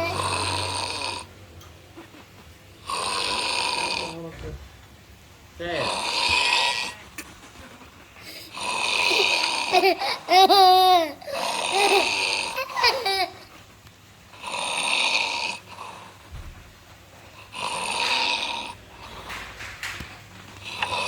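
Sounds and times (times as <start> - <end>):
child snoring: 0.0 - 1.3, 2.8 - 4.2, 5.8 - 7.0, 8.2 - 10.3, 10.9 - 13.3, 14.4 - 16.2, 17.4 - 19.4, 20.6 - 21.0
quiet breathing: 8.1 - 8.6.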